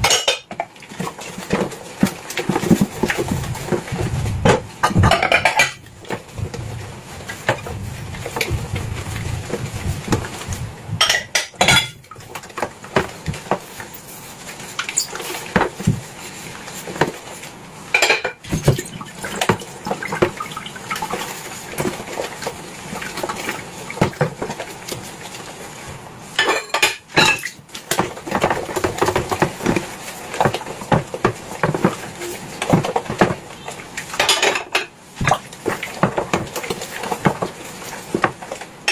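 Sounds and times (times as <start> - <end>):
dishes and cutlery clinking: 0.0 - 1.7, 4.8 - 6.2, 11.0 - 13.6, 16.9 - 22.3, 26.3 - 33.4, 34.0 - 38.9.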